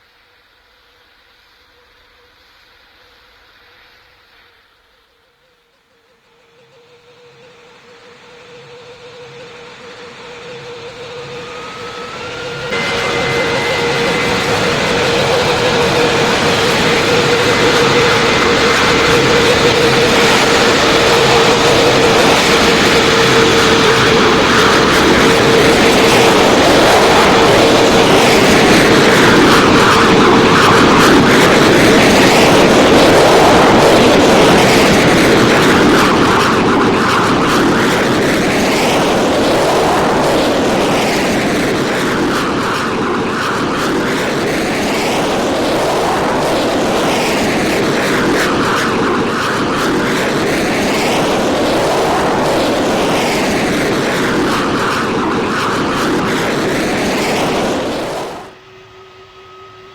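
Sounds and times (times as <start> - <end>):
airplane engines running: 5.4 - 59.9
sweeping whoosh: 8.0 - 30.5.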